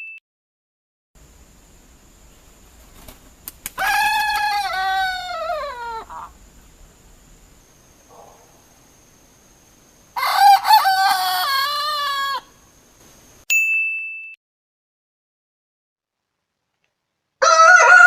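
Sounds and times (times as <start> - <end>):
rooster crowing: 3.8 - 6.4, 10.2 - 12.6, 17.4 - 18.0
short bright ding: 13.5 - 14.4.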